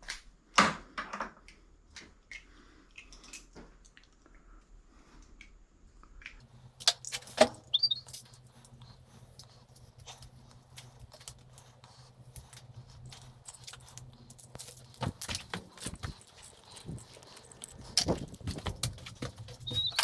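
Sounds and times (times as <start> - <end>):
steady low hum: 6.4 - 20.0
scrap metal clinking and knocking: 12.3 - 20.0.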